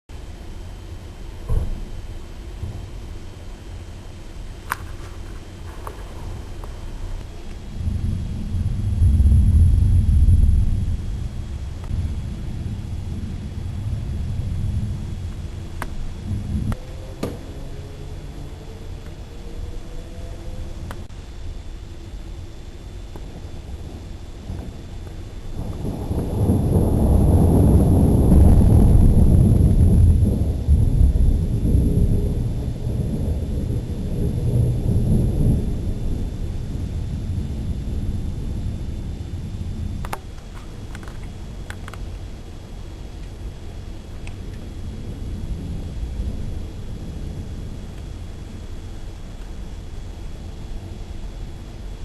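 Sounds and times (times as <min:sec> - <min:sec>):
rolling thunder: 0:05.6 - 0:21.0, 0:23.1 - 0:40.2, 0:43.8 - 0:50.7.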